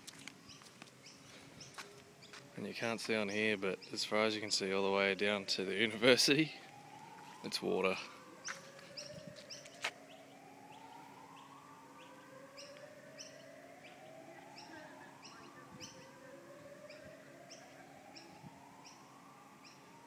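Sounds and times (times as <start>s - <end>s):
birds chirping: 0.0s - 20.0s
faint siren wailing: 0.0s - 20.0s.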